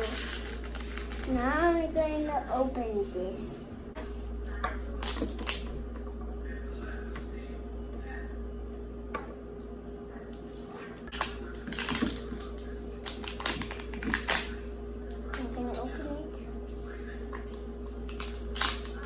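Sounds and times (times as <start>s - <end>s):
plastic wrapping crinkling: 0.0s - 1.7s, 11.1s - 14.6s
steady low hum: 0.0s - 19.0s.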